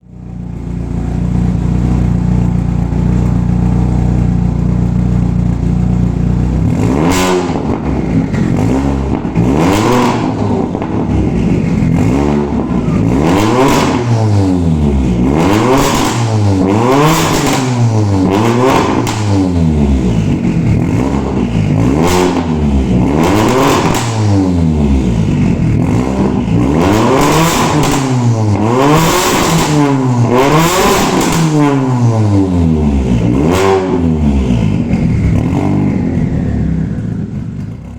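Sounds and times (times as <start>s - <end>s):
car engine idling: 0.0s - 28.6s, 31.0s - 37.9s
engine revving in blips: 6.6s - 37.9s.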